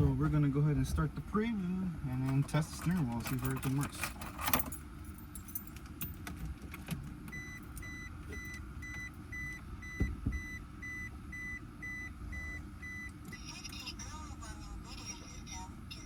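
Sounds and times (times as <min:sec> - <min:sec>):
dull thumps inside car: 0:00.0 - 0:01.3, 0:10.0 - 0:10.5
car warning beeps: 0:07.3 - 0:14.1.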